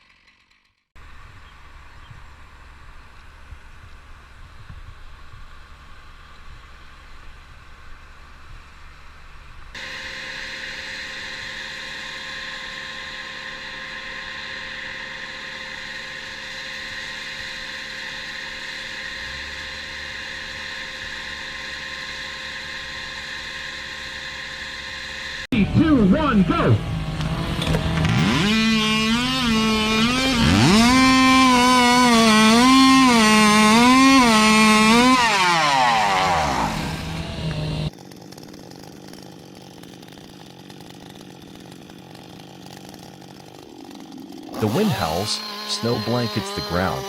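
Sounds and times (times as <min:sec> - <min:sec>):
high steady engine note: 0:00.0 - 0:47.0
motor running steadily: 0:01.0 - 0:47.0
low rumble with knocks: 0:26.8 - 0:30.0.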